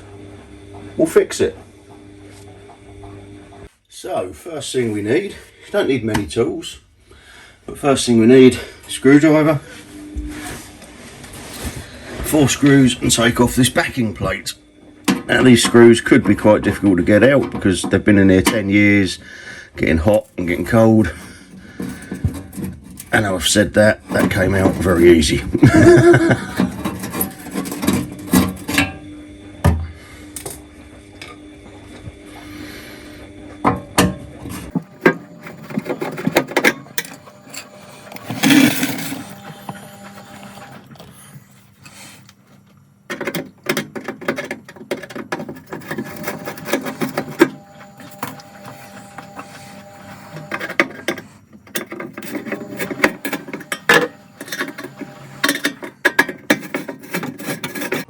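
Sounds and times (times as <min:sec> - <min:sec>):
scraping rustle: 0:10.3 - 0:12.9
screwdriver on sheet metal: 0:26.0 - 0:28.9, 0:50.3 - 0:58.0.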